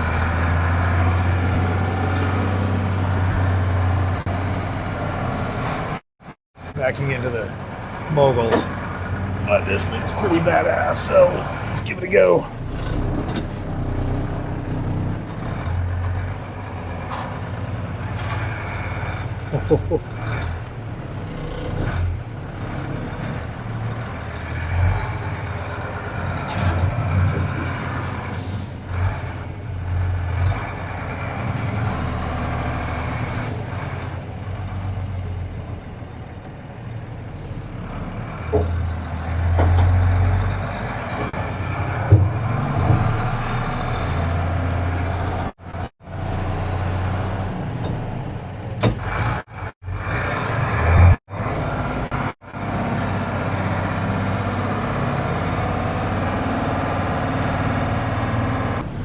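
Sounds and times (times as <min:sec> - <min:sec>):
truck diesel engine under load: 0:00.0 - 0:59.0
knocks from truck: 0:41.2 - 0:43.2.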